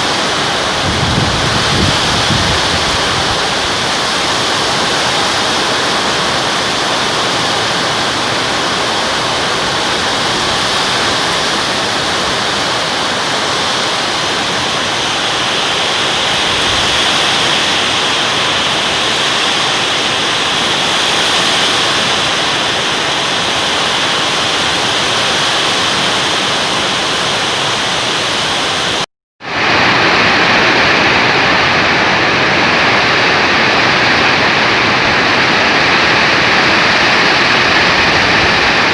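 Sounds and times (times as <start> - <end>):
heavy rain in strong wind: 0.0 - 38.9.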